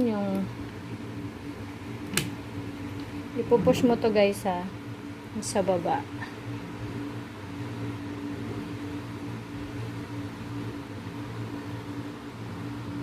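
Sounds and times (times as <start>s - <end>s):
appliance electrical hum: 0.0s - 13.0s.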